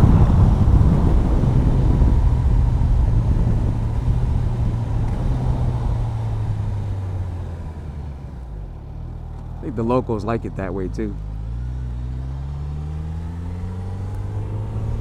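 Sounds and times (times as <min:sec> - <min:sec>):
rushing wind: 0:00.0 - 0:08.4
motorcycle engine running: 0:00.0 - 0:15.0
road noise: 0:00.0 - 0:15.0.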